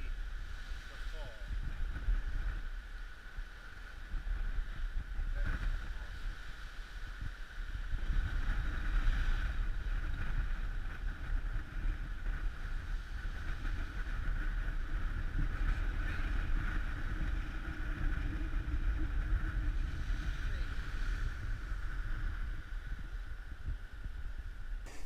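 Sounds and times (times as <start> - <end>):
wind rumbling on microphone: 0.0 - 25.0.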